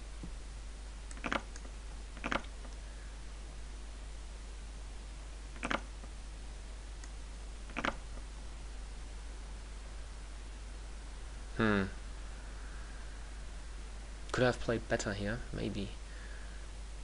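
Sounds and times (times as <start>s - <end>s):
low steady hum: 0.0s - 17.0s
chess move clicks: 1.1s - 2.8s, 5.6s - 5.9s, 7.0s - 8.2s.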